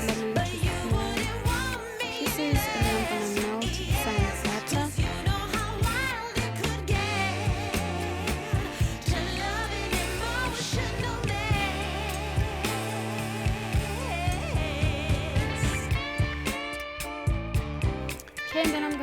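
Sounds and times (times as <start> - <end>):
pop music with singing: 0.0 - 19.0.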